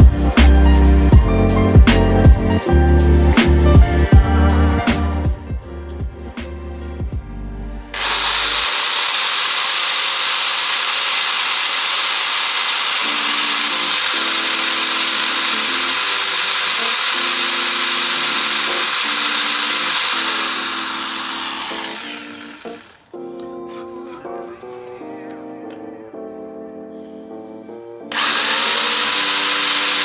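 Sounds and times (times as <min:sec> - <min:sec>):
electric drill boring into wood: 0:08.0 - 0:23.1, 0:28.1 - 0:30.0.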